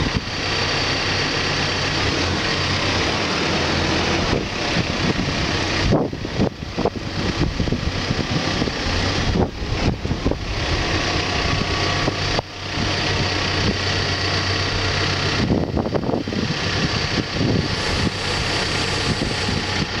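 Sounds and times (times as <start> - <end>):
diesel engine running: 0.0 - 20.0
mechanical noise: 17.4 - 20.0.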